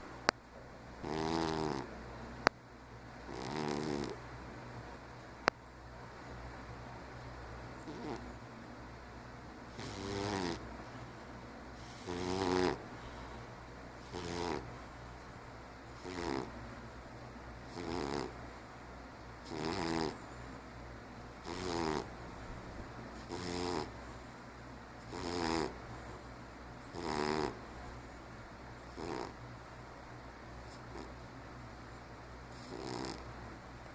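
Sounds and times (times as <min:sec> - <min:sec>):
faint low hum: 0:00.0 - 0:33.9
cat snoring: 0:01.0 - 0:01.9, 0:03.3 - 0:04.2, 0:07.8 - 0:08.3, 0:09.7 - 0:10.6, 0:11.8 - 0:13.1, 0:14.0 - 0:14.7, 0:16.0 - 0:16.5, 0:17.7 - 0:18.4, 0:19.4 - 0:20.2, 0:21.4 - 0:22.1, 0:23.2 - 0:24.0, 0:25.0 - 0:26.1, 0:26.9 - 0:27.6, 0:28.9 - 0:29.4, 0:30.7 - 0:31.1, 0:32.5 - 0:33.2.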